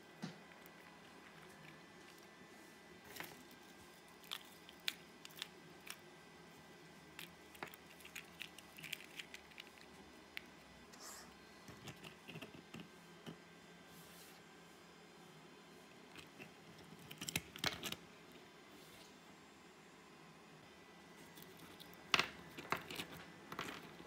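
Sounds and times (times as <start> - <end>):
low room noise: 0.0 - 24.0.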